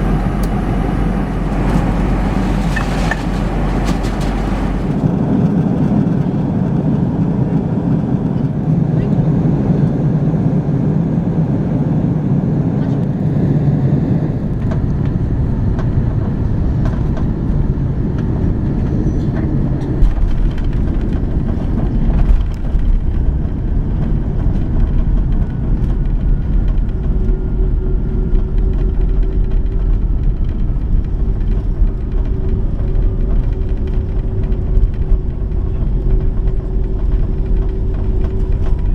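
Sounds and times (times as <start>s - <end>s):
steady hum: 0.0s - 5.6s
airliner cabin rumble: 0.0s - 38.9s
jolts and knocks: 1.4s - 5.0s.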